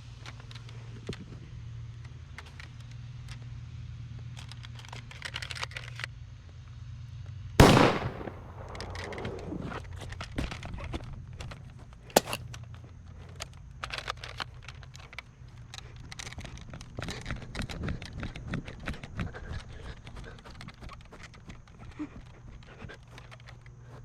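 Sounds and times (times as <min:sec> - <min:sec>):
steady low hum: 0:07.6 - 0:09.8.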